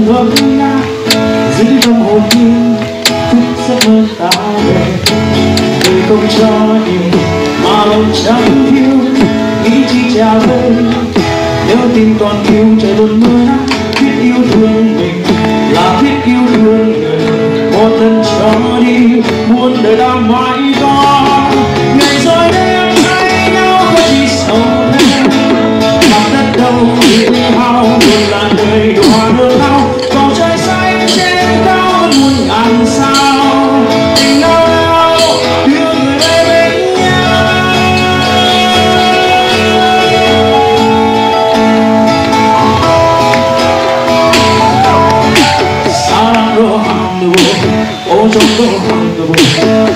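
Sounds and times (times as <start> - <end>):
man singing: 0.0 - 42.4, 43.4 - 49.9
acoustic guitar strumming: 0.0 - 49.9
light percussion: 20.7 - 37.3.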